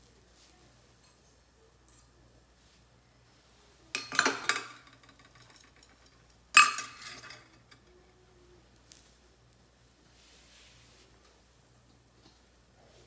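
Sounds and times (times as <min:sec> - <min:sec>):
metal cookware clanking: 0:04.0 - 0:07.8.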